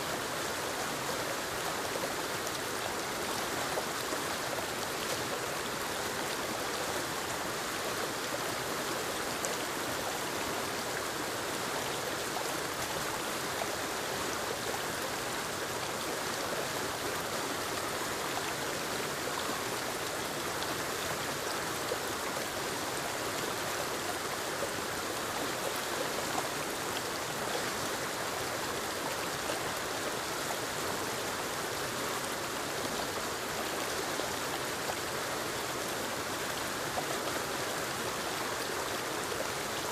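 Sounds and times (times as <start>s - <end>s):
waterfall rushing over rocks: 0.0s - 39.9s.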